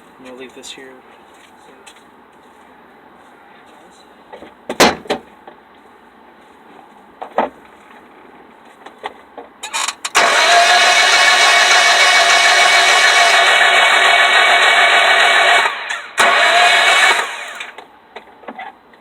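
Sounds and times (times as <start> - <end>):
loud motor whir: 9.7 - 17.8.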